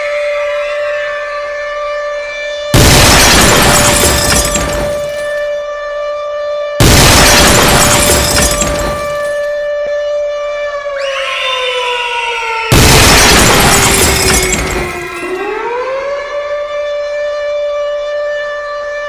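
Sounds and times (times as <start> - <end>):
siren-like alarm tone: 0.0 - 19.0
loud crash: 2.8 - 5.4, 6.8 - 9.5, 12.7 - 15.5.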